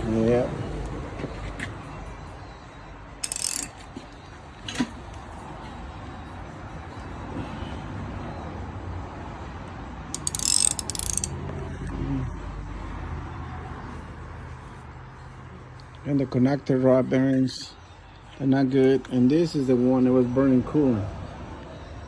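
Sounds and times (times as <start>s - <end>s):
sharp metal click: 3.2s - 4.0s, 10.2s - 11.4s
ratchet wrench clicking: 3.2s - 4.9s, 10.1s - 11.4s.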